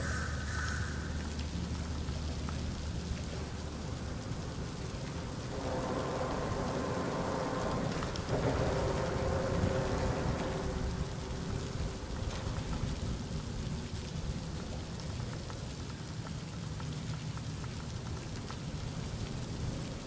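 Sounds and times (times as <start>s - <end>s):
wind buffeting microphone: 1.5s - 15.7s.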